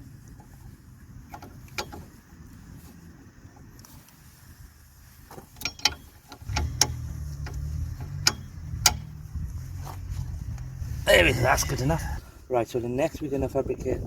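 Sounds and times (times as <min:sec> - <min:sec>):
hand tools clinking: 0:05.4 - 0:09.2
low rumble: 0:06.4 - 0:12.5.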